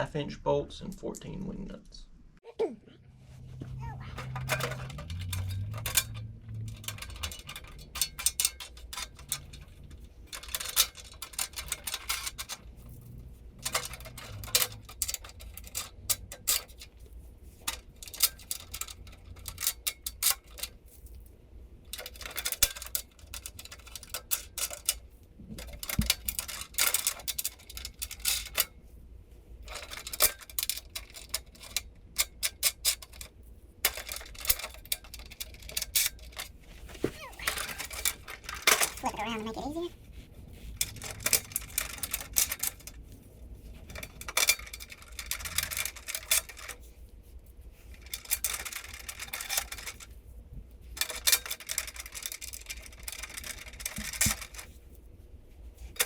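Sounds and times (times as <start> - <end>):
bolts and nuts clicking and rattling: 4.0 - 28.9, 29.6 - 56.0.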